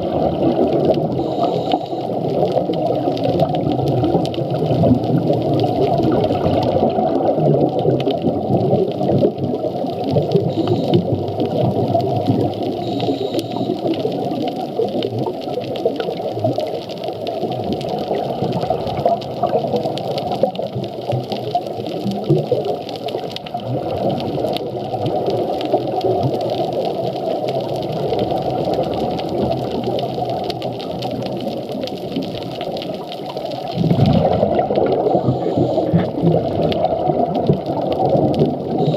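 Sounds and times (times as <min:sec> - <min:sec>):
underwater rushing bubbles: 0:00.0 - 0:38.9
whale calls: 0:01.1 - 0:02.2, 0:10.4 - 0:11.1, 0:12.6 - 0:13.9, 0:34.8 - 0:36.2.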